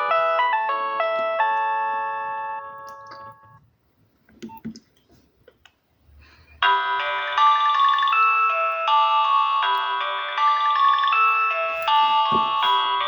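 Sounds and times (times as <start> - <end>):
polyphonic phone ringtone: 6.6 - 13.0.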